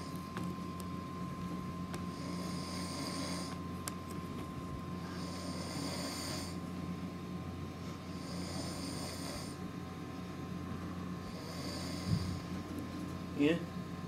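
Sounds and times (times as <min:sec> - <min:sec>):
man snoring: 0:02.1 - 0:03.6, 0:05.0 - 0:06.6, 0:08.1 - 0:09.6, 0:11.2 - 0:12.4.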